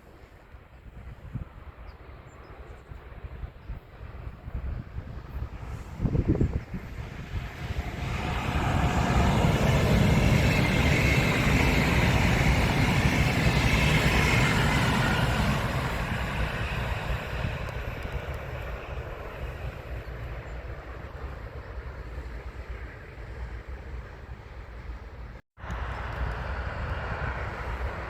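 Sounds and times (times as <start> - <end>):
train passing: 1.0 - 28.0.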